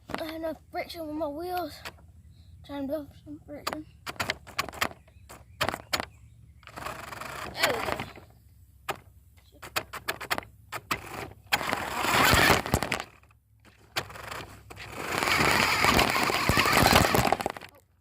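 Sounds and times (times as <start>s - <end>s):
toy car clicks and knocks: 3.6s - 8.2s, 9.6s - 17.8s
toy car rattling rolling noise: 6.6s - 8.2s, 9.6s - 17.8s.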